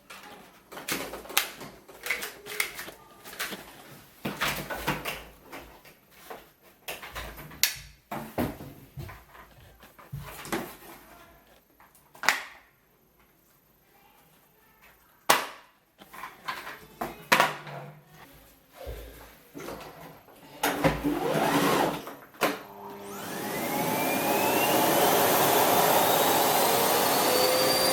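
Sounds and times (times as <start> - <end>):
plastic parts clicking: 0.1 - 3.7
vacuum cleaner motor running: 21.0 - 22.0, 22.7 - 27.9.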